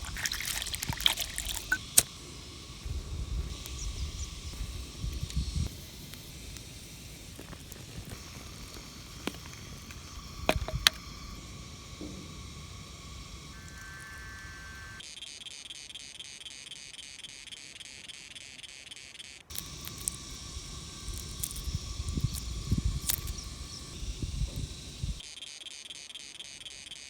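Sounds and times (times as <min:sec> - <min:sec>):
insects chirping in a trill: 0:00.0 - 0:27.0.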